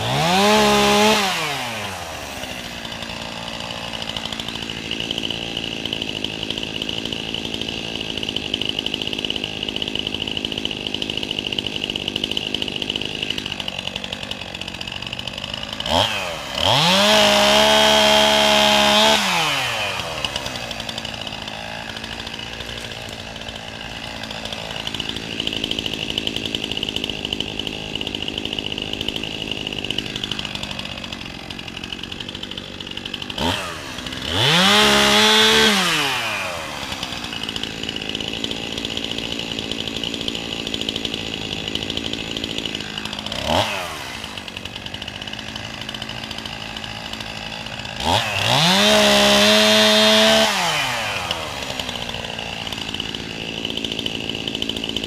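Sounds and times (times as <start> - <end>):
chainsaw idling and revving: 0.0 - 55.0.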